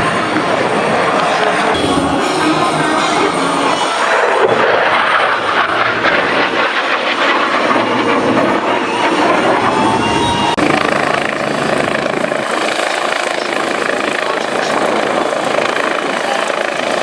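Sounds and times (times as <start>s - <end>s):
helicopter rotor noise: 0.0s - 17.0s.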